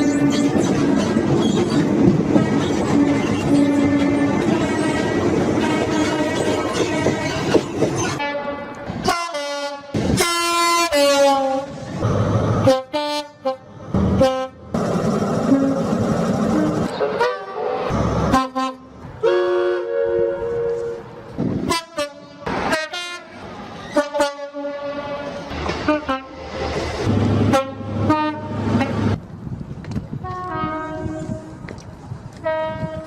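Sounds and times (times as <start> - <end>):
train running rumble: 0.0 - 9.2, 9.8 - 19.2, 20.4 - 33.0
two-tone train horn blasts: 2.4 - 7.6, 8.2 - 11.8, 12.6 - 14.6, 16.6 - 21.0, 21.6 - 23.3, 24.0 - 26.4, 27.5 - 29.0, 30.2 - 31.6, 32.4 - 33.0.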